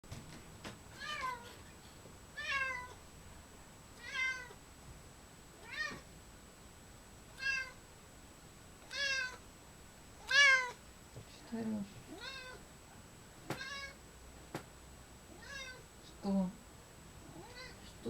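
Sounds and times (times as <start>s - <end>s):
cat meowing: 1.0s - 1.6s, 2.4s - 3.0s, 4.0s - 4.6s, 5.6s - 6.0s, 7.4s - 7.8s, 8.9s - 9.4s, 10.2s - 10.8s, 12.1s - 12.6s, 13.5s - 14.0s, 15.3s - 15.8s, 17.3s - 17.8s.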